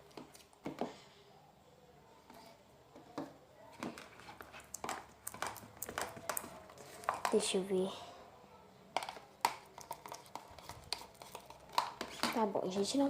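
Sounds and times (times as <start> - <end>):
spoon stirring slime in a bowl: 0.0 - 1.0, 3.7 - 7.6, 9.0 - 13.0.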